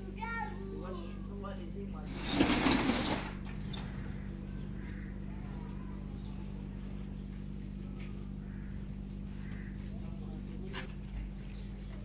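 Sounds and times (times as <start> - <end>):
faint distant voices: 3.8 - 12.0.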